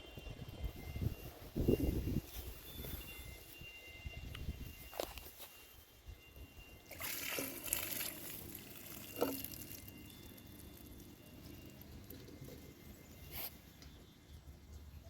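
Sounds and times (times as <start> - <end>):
water pouring: 6.8 - 13.2.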